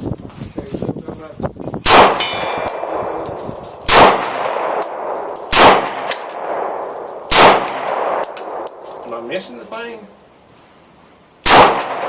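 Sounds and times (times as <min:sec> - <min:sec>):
pistol shots with echo: 0:01.8 - 0:09.0, 0:11.4 - 0:12.0.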